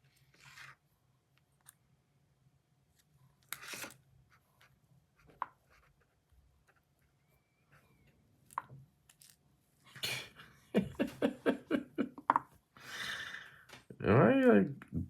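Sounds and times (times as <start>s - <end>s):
fidget toy scraping rustles: 0.0s - 0.8s, 3.5s - 4.0s.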